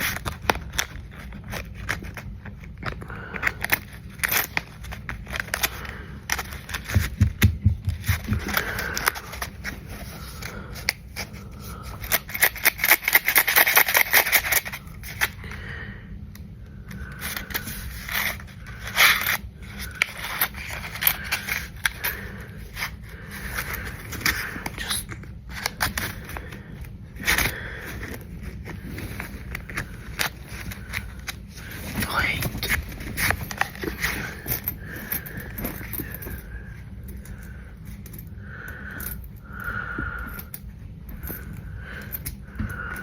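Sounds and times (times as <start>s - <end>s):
coins clicking and scraping: 2.8s - 7.4s, 8.0s - 15.4s, 17.1s - 26.5s, 27.2s - 38.3s.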